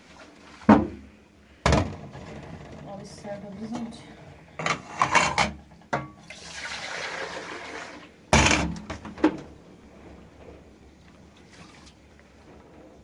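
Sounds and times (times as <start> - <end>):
pouring water: 6.1 - 8.5, 10.7 - 13.0.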